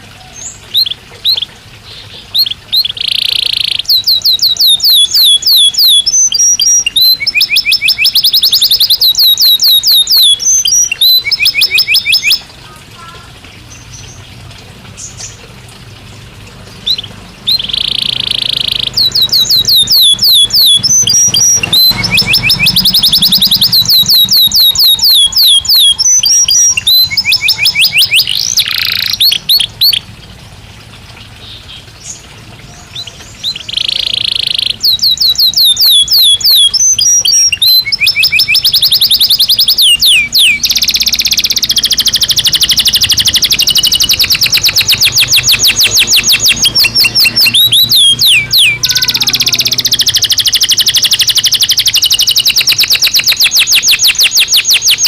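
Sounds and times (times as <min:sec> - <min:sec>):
canary trilling: 0:00.0 - 0:14.2, 0:16.7 - 0:30.1, 0:31.4 - 0:55.0.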